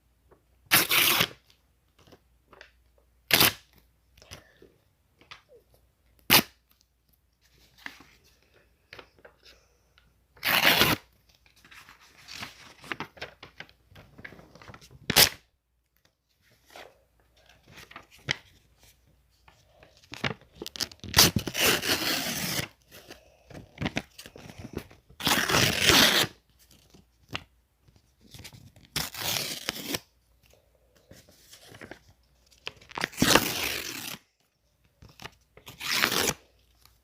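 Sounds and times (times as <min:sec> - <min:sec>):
paper tearing: 0:00.7 - 0:01.4, 0:10.4 - 0:11.1, 0:20.7 - 0:22.8, 0:25.2 - 0:26.4, 0:28.8 - 0:30.1, 0:33.0 - 0:34.2, 0:35.7 - 0:36.4
paper rustling and crinkling: 0:11.2 - 0:15.1, 0:16.0 - 0:21.5, 0:31.0 - 0:33.3.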